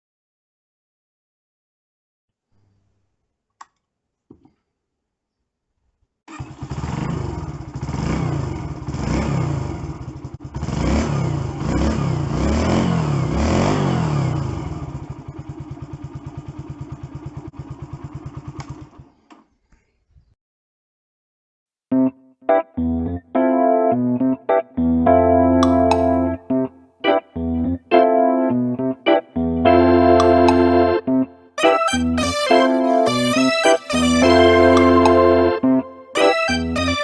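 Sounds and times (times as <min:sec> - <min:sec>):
motorcycle engine revving and idling: 0:06.3 - 0:19.5.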